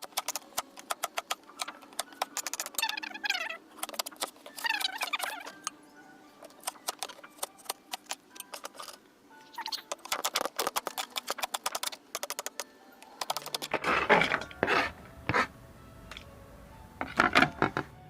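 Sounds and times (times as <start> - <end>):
knife scraping board: 13.4 - 15.5.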